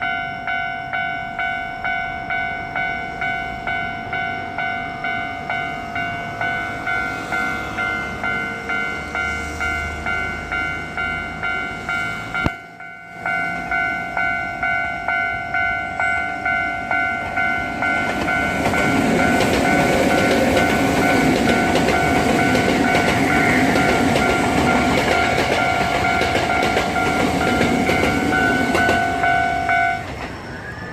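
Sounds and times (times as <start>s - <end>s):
level-crossing alarm bell ringing: 0.0s - 30.9s
train wheels clattering: 16.9s - 30.9s.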